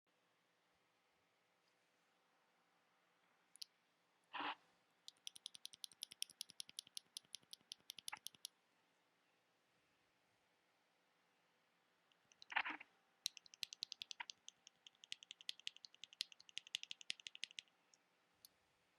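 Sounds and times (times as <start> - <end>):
mechanical keyboard clicks: 5.1 - 8.5, 12.2 - 17.7.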